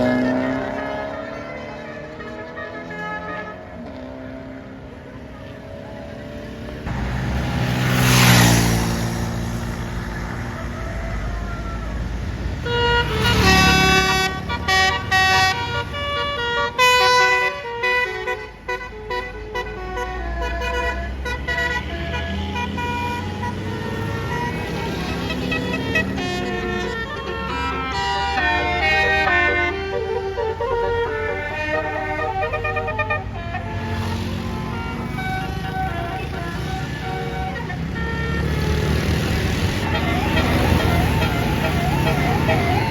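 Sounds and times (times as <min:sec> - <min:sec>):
musical bus horn tune: 0:00.0 - 0:04.8, 0:10.4 - 0:42.9
bus passing by: 0:00.0 - 0:42.9
low rumble of bus engines: 0:04.8 - 0:42.9.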